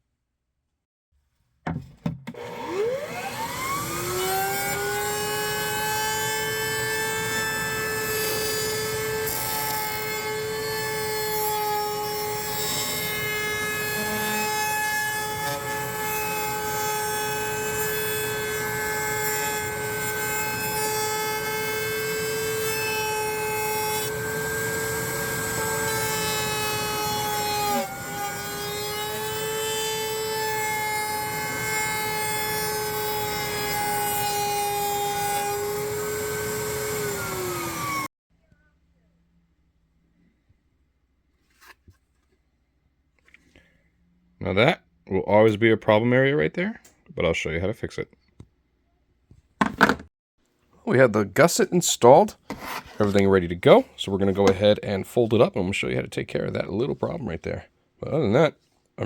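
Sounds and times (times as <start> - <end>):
router high whine: 2.3 - 11.2, 11.9 - 38.1.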